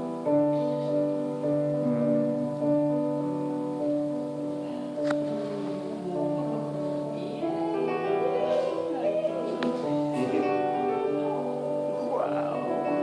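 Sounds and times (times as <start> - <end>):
sustained piano chords: 0.0 - 13.0
person singing: 1.8 - 3.0, 5.2 - 13.0.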